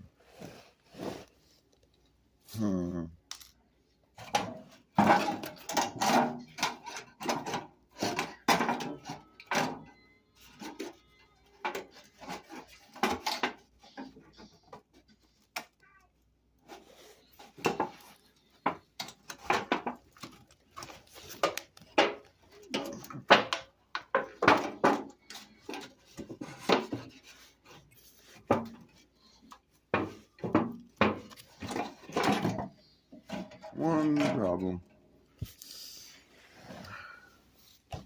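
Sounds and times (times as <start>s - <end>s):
metal knocking and scraping on wood: 4.2s - 15.7s, 17.4s - 34.9s.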